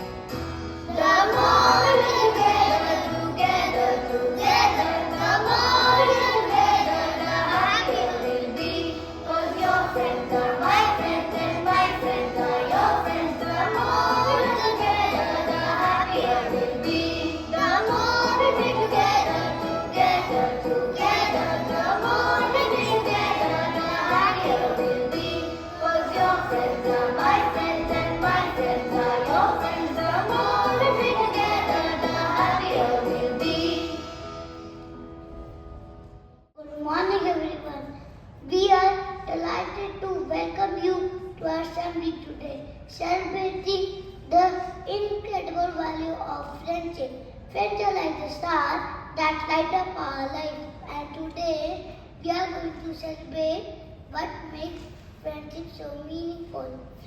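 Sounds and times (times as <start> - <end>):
instrumental backing music: 0.0 - 36.5
children singing: 0.9 - 34.1.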